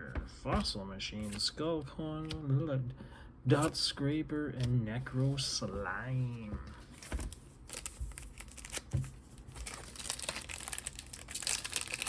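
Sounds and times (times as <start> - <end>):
foil wrapper crinkling and tearing: 7.7 - 12.0.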